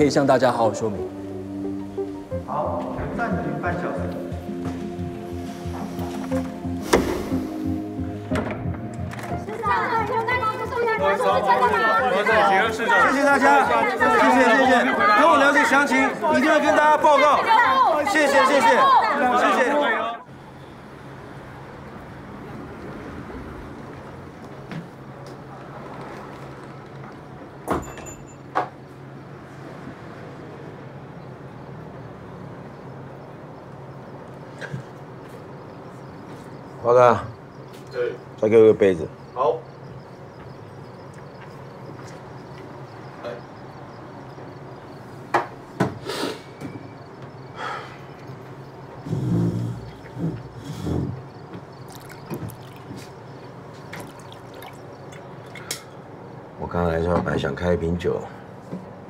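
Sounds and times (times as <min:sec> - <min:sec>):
glass clinking when set down: 0:27.7 - 0:28.7
drink pouring and glugging: 0:51.8 - 0:53.2, 0:53.9 - 0:55.7.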